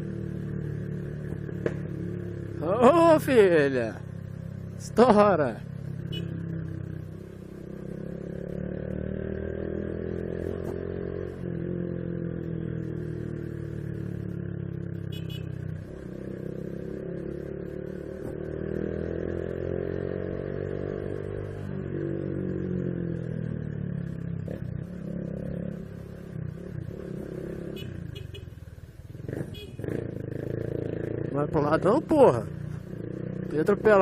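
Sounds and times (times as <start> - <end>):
motorcycle engine revving: 0.0 - 34.0.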